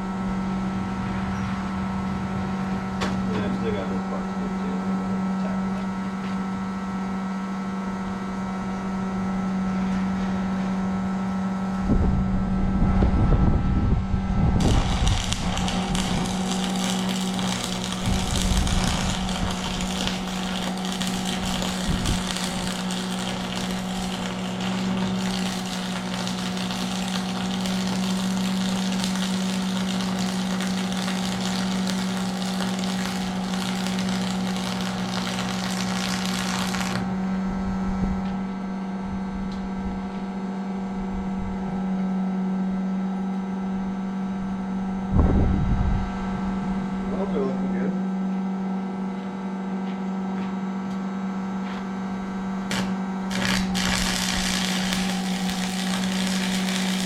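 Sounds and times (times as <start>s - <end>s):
low electrical hum: 0.0s - 57.0s
welding arc crackling: 14.6s - 37.2s, 52.6s - 57.0s.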